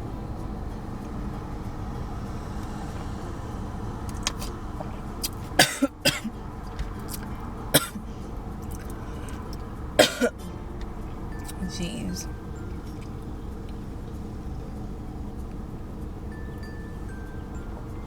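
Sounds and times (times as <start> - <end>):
steady low rumble: 0.0 - 18.0
person coughing: 5.6 - 6.3, 7.8 - 8.0, 10.0 - 10.4.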